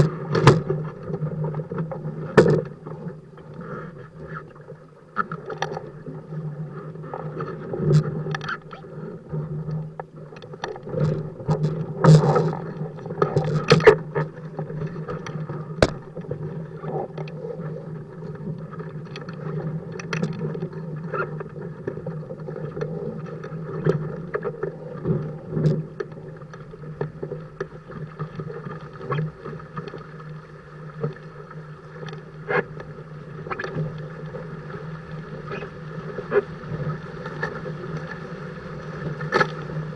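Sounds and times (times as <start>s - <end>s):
water rushing against hulls: 0.0s - 39.9s
splashes and knocks: 15.2s - 16.2s.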